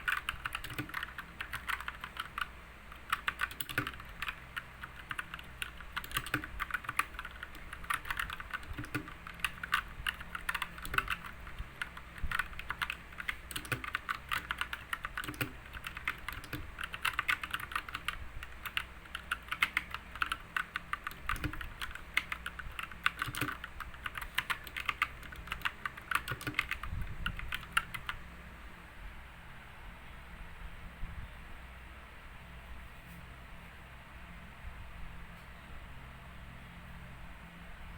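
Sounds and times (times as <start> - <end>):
keyboard key clicks: 3.0 - 11.3, 11.9 - 28.2.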